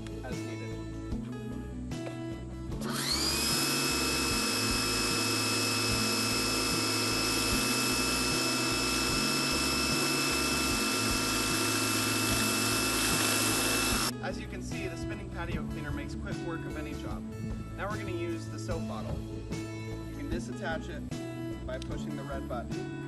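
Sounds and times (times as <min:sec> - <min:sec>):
pressure washer pump whining: 0:02.8 - 0:14.1.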